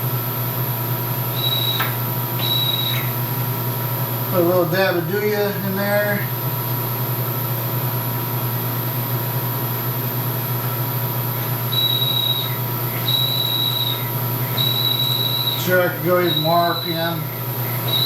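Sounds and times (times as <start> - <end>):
milling machine motor hum: 0.0 - 18.0
drill squealing in metal: 1.4 - 3.2, 11.7 - 18.0.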